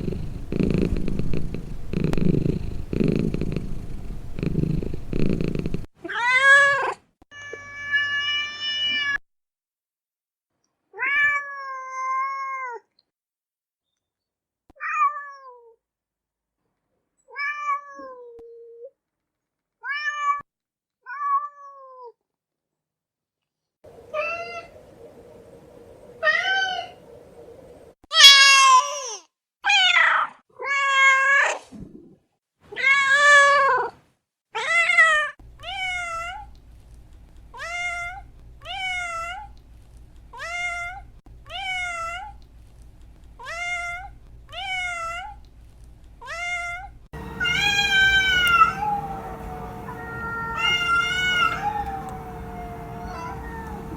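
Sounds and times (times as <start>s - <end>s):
cats meowing: 47.2s - 53.9s.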